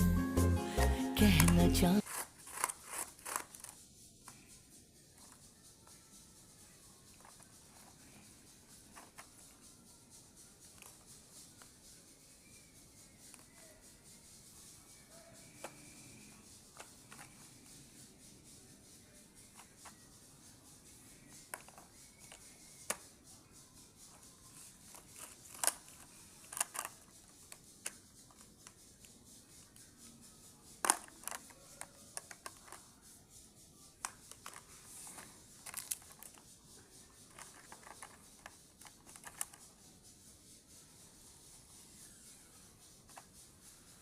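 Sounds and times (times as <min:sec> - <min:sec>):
box and packaging being handled: 0:00.8 - 0:03.8, 0:24.6 - 0:27.1, 0:34.0 - 0:36.4.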